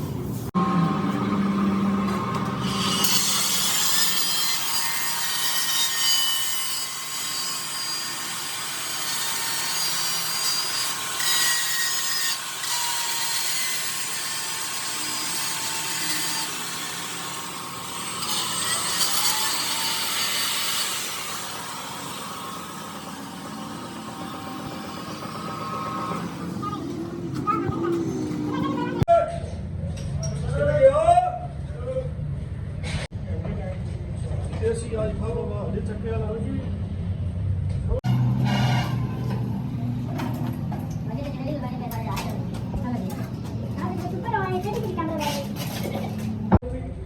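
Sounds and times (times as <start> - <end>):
power tool grinding metal: 0.6 - 27.4.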